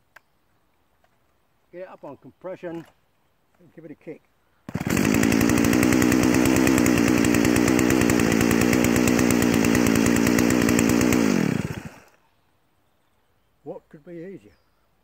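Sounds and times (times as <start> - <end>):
chainsaw idling: 4.7 - 12.2.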